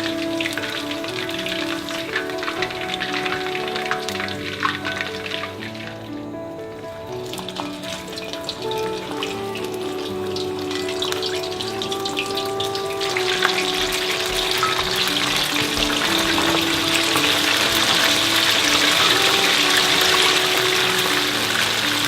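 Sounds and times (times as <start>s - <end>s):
background music: 0.0s - 22.0s
food frying in hot oil: 13.0s - 22.0s.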